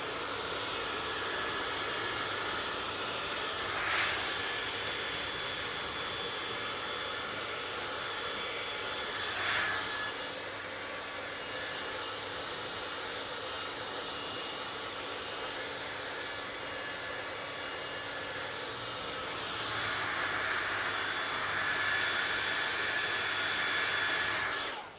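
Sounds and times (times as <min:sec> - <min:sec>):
hair dryer blowing: 0:00.0 - 0:24.9.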